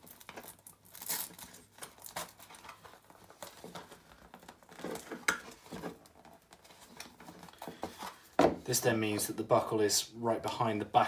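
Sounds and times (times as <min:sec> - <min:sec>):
velcro strap rustling and scraping: 0:00.0 - 0:08.3.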